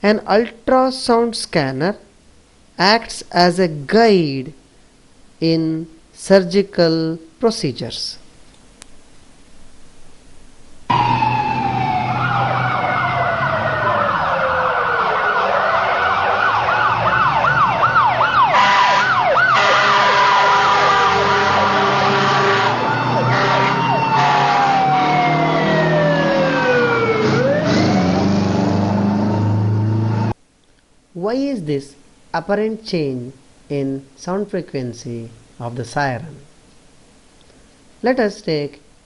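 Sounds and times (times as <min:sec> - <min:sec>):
emergency vehicle sirens: 0:10.9 - 0:30.4.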